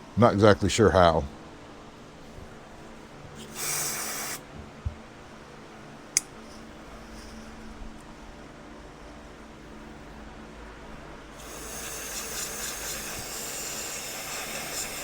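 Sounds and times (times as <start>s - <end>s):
aerosol spray hiss: 3.4s - 4.5s, 11.4s - 15.0s.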